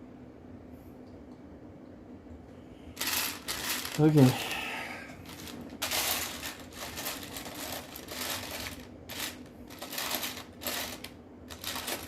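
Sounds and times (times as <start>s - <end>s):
plastic pieces rattling: 3.0s - 4.4s, 5.2s - 12.0s.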